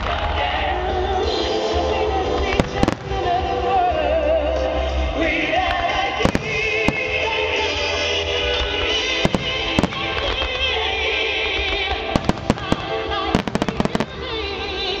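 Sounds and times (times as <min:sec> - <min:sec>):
music: 0:00.0 - 0:15.0
fireworks bangs: 0:02.4 - 0:04.0, 0:05.6 - 0:15.0.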